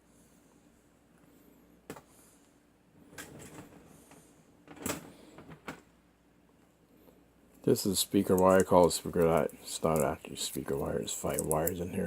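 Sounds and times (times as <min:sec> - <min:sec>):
wire stripper clicks and rasps: 0:08.1 - 0:12.0.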